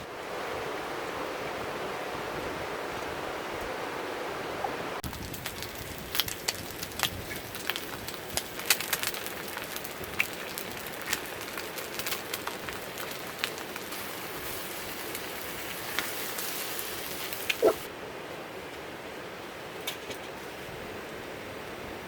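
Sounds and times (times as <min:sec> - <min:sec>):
fire crackling and popping: 0:05.0 - 0:17.9
fire hiss: 0:05.0 - 0:17.9.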